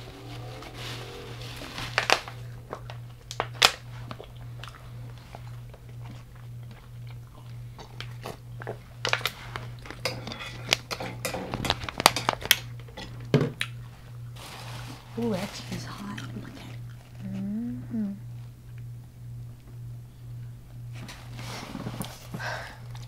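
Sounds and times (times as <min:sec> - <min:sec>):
steady low hum: 0:00.0 - 0:23.0
crunchy food chewing: 0:00.1 - 0:10.9.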